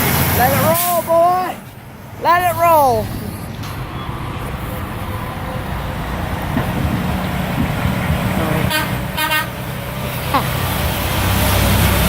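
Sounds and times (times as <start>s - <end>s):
truck engine rumble: 0.0s - 12.0s
air horn toots: 8.6s - 9.6s.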